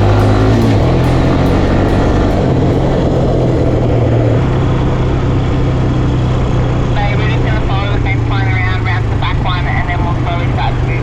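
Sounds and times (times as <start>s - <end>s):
motorbike engine running: 0.0s - 11.0s.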